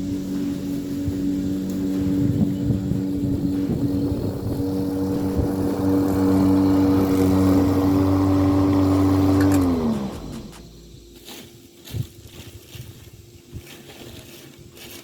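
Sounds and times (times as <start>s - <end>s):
motor spinning down: 0.0s - 11.0s
lawn mower electric motor hum: 0.0s - 15.0s.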